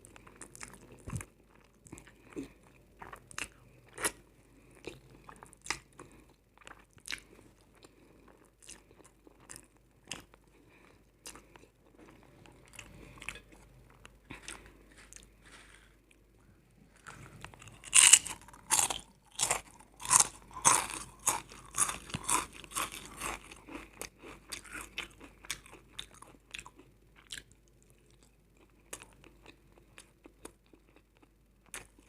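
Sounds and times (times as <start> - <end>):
person crunching chips: 14.3 - 16.0, 16.9 - 27.4.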